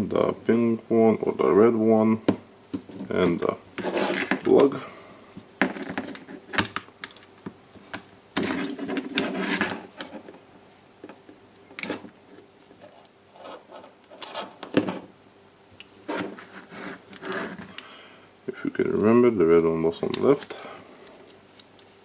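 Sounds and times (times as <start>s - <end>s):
hands handling wires and plastic parts: 2.7s - 10.4s, 19.9s - 22.0s.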